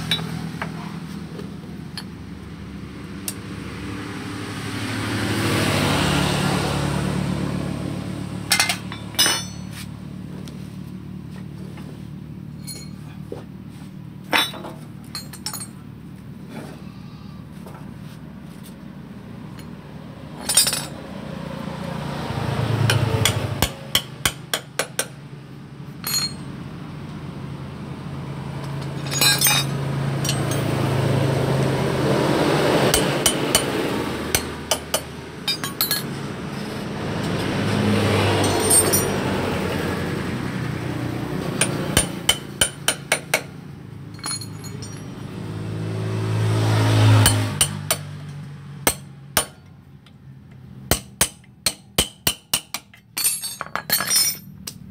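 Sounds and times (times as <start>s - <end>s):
metal tools clinking on metal: 0.0s - 0.8s, 8.5s - 9.9s, 12.5s - 13.4s, 14.2s - 16.7s, 19.5s - 21.0s, 26.0s - 26.6s, 28.6s - 30.8s, 34.7s - 37.4s, 38.3s - 39.2s, 41.6s - 43.0s, 44.0s - 45.4s, 52.0s - 54.9s.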